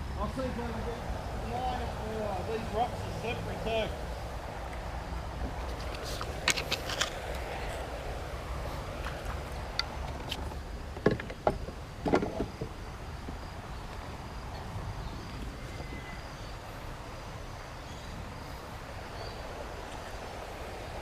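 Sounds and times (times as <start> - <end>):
low water rush: 0.0 - 21.0
kayak knocking against rocks: 10.2 - 12.8.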